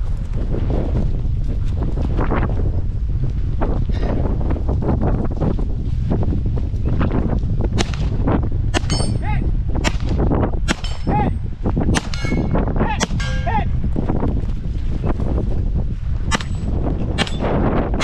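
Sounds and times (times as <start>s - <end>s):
wind noise on microphone: 0.0s - 18.0s
pistol shots: 7.8s - 8.2s, 9.8s - 11.1s, 12.0s - 13.4s, 16.3s - 17.5s
steel target plate ringing: 8.9s - 9.3s, 12.1s - 12.6s.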